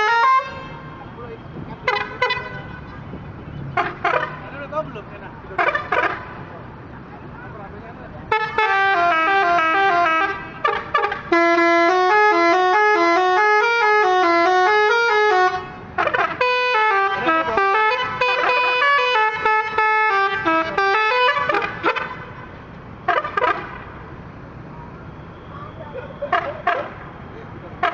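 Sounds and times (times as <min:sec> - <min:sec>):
multi-tone air horn melodies: 0:00.0 - 0:00.8, 0:01.8 - 0:03.1, 0:08.3 - 0:23.9.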